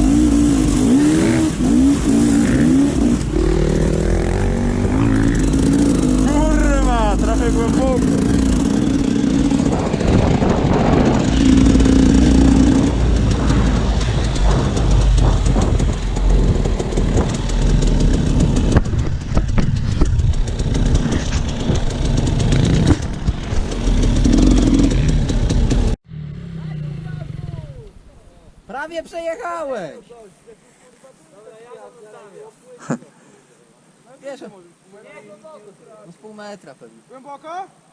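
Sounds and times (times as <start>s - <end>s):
dirt bike engine revving: 0.0s - 27.9s
sharp knocks and rattles: 8.0s - 26.0s.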